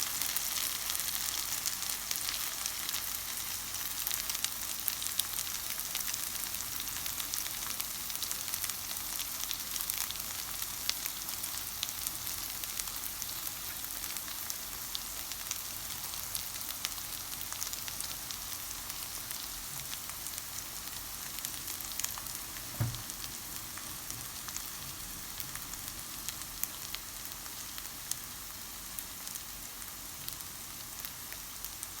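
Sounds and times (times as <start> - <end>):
food sizzling in oil in a frying pan: 0.0 - 32.0
short low knock: 22.7 - 23.2.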